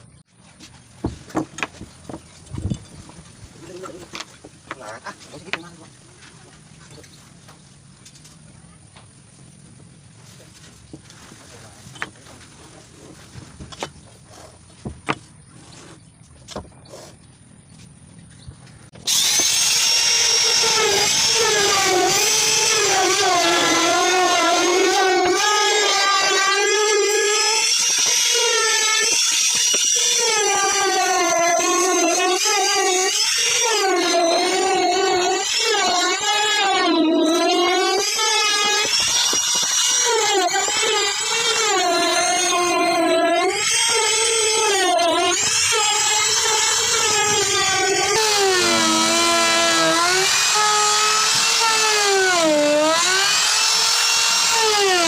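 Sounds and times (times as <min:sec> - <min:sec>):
power tool motor on wood: 0:19.0 - 0:55.0.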